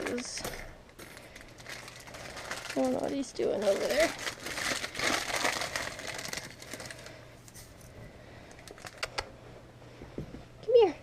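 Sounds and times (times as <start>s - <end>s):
dry forage rustling and crackling: 1.2s - 7.8s.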